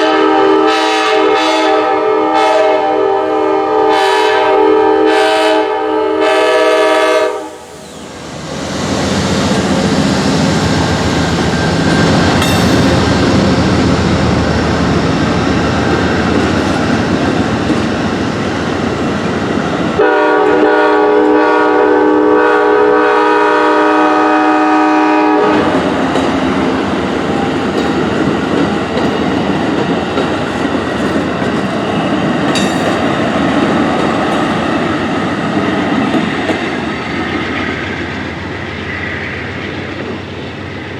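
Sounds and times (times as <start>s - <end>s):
train horn: 0.0s - 7.8s, 20.0s - 25.9s
diesel locomotive rumbling by: 0.0s - 40.9s
wheels clacking over rail joints: 25.5s - 37.3s.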